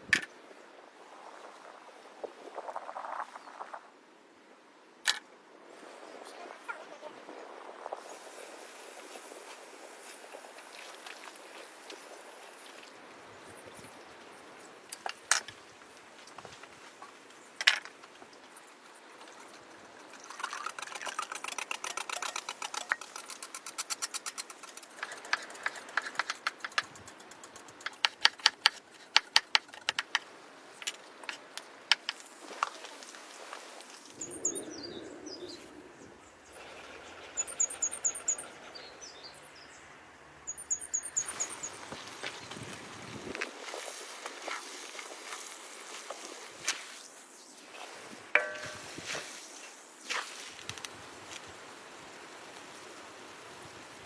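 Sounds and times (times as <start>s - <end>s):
fast rattling ticks: 19.3s - 31.0s.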